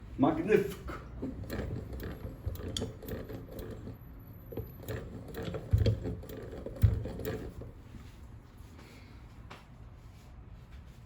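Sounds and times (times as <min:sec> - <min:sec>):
sewing machine clattering: 0:01.1 - 0:07.8.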